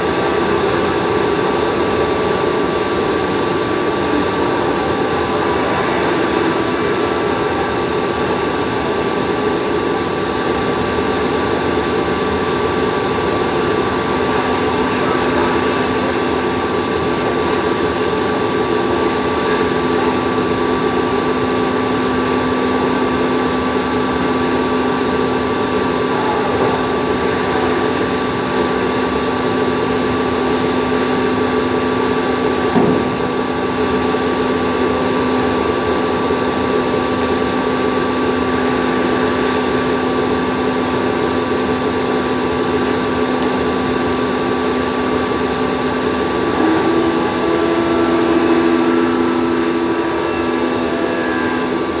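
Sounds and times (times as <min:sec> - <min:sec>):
drilling machine motor hum: 0:00.0 - 0:52.0
brief knock: 0:32.7 - 0:33.2.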